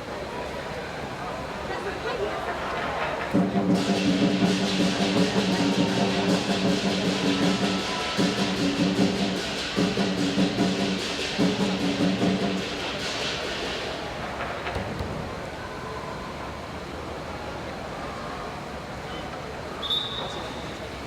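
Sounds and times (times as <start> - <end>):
drum beat: 3.3 - 13.8
held synth notes: 3.4 - 12.8.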